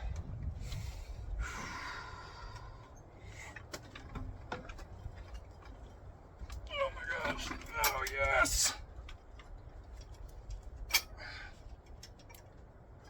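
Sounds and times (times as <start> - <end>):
person breathing hard and straining: 0.6 - 3.6.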